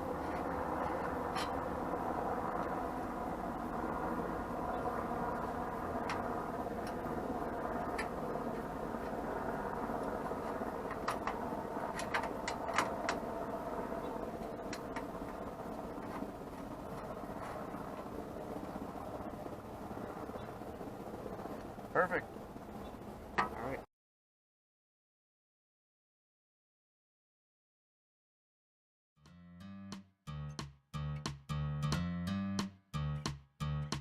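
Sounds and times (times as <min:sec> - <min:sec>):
steady mechanical drone: 0:00.0 - 0:23.8.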